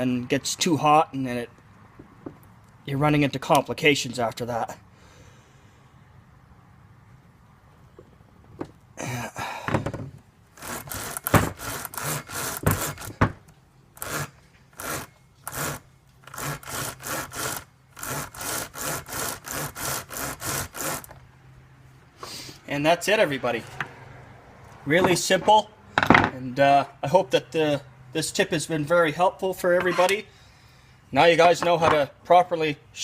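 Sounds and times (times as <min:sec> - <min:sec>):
file rasping on chain teeth: 0:10.6 - 0:13.2, 0:14.0 - 0:21.2.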